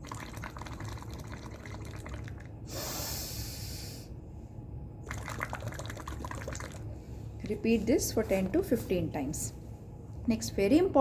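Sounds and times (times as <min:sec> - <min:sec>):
straw bubbling in water: 0:00.0 - 0:02.6, 0:05.0 - 0:06.9
hissing breath through nose: 0:02.7 - 0:04.1.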